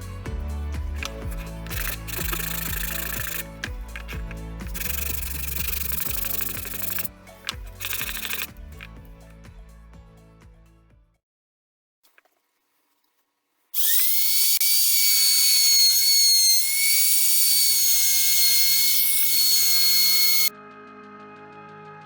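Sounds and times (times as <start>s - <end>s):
power tool motor whining: 1.0s - 8.5s, 13.8s - 20.5s.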